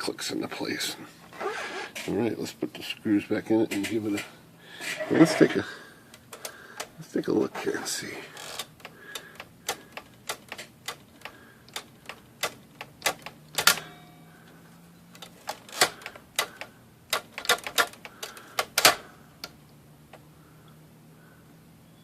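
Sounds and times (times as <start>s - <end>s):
manual typewriter key strikes: 8.6s - 14.0s, 15.2s - 19.0s.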